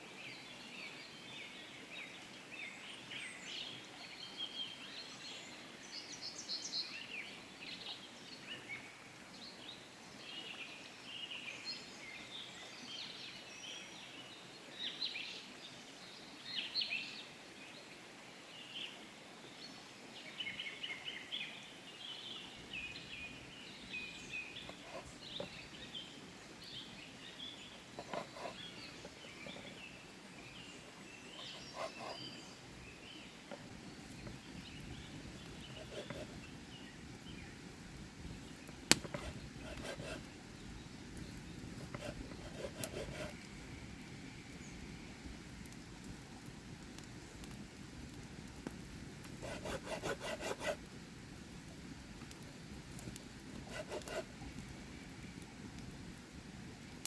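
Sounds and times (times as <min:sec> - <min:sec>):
steady outdoor hiss: 0:00.0 - 0:57.0
small birds chirping: 0:22.7 - 0:37.6, 0:38.2 - 0:43.6.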